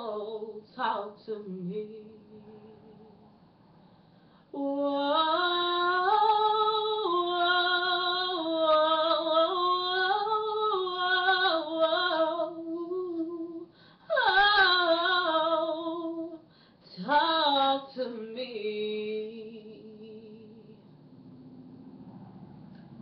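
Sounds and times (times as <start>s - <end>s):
woman singing a cappella: 0.0s - 3.2s, 4.4s - 20.9s.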